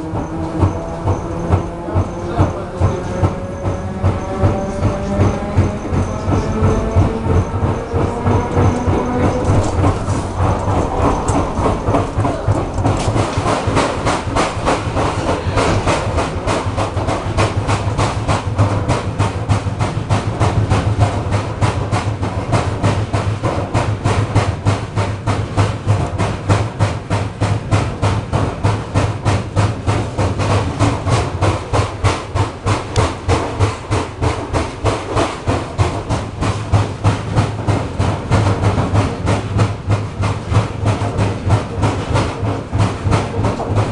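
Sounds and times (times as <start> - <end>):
train bogie knocking: 0.0 - 43.9
steady low hum: 0.1 - 18.6.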